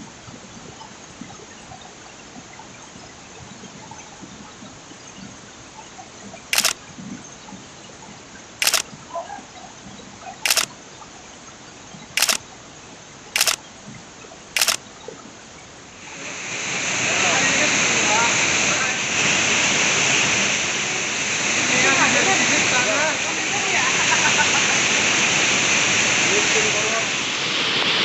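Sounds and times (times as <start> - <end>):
camera shutter clicks: 6.6 - 6.8, 8.6 - 8.8, 10.5 - 10.7, 12.2 - 12.4, 13.4 - 13.6, 14.6 - 14.8.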